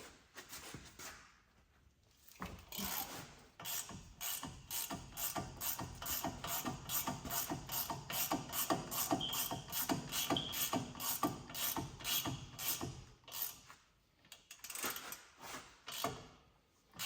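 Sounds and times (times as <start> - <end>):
ratchet pawl clicking: 3.6 - 13.6.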